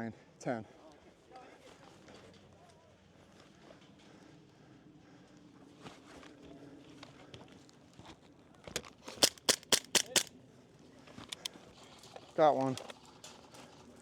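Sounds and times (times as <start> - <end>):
airsoft rifle shots: 9.2 - 10.3.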